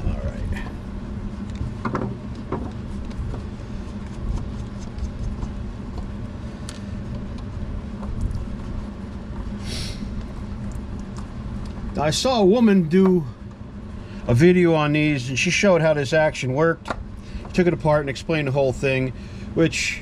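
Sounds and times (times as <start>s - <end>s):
low mechanical hum: 0.0s - 20.0s
brief hiss: 9.6s - 10.1s.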